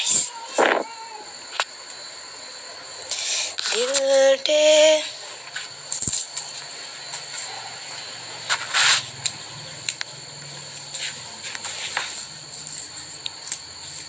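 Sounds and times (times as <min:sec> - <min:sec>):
faint high-pitched whine: 0:00.0 - 0:14.0
brushing scuffs on clothing: 0:08.5 - 0:09.1, 0:10.8 - 0:13.2.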